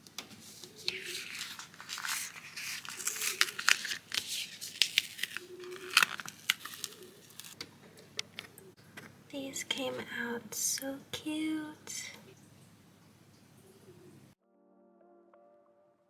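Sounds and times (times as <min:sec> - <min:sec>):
plastic sheet crinkling and tearing: 0:00.4 - 0:07.6.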